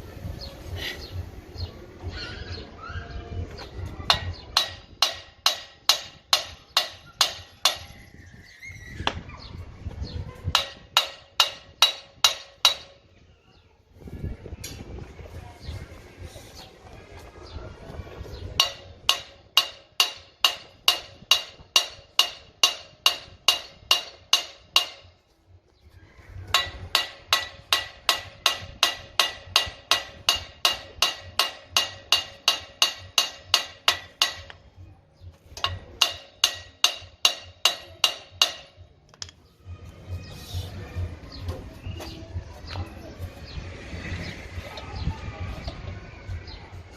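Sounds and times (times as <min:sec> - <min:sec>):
hammer ringing on steel: 0:04.1 - 0:08.0, 0:10.6 - 0:13.0, 0:18.6 - 0:25.2, 0:26.5 - 0:34.6, 0:35.6 - 0:38.8.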